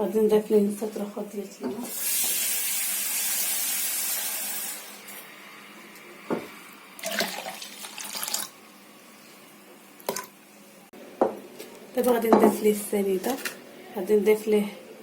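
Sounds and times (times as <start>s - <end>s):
water pouring into blender jar: 7.0s - 8.5s.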